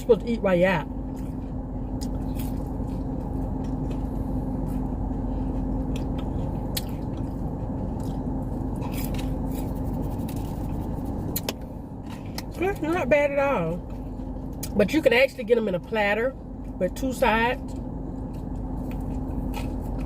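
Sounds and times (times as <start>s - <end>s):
car cabin hum: 0.0s - 20.0s
person chewing crunchy food: 1.1s - 12.6s, 17.7s - 20.0s.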